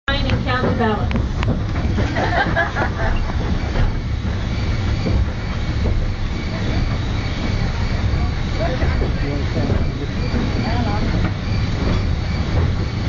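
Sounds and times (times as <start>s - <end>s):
train wheels rumbling on rails: 0.1s - 13.0s.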